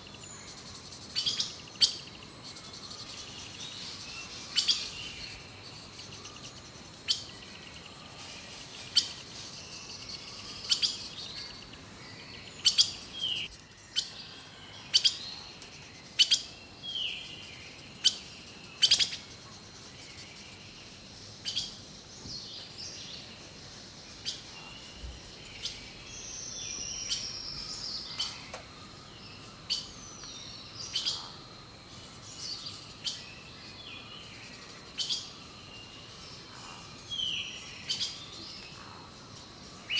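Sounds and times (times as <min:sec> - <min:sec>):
birds chirping and whistling: 0:08.9 - 0:15.4, 0:24.2 - 0:31.3.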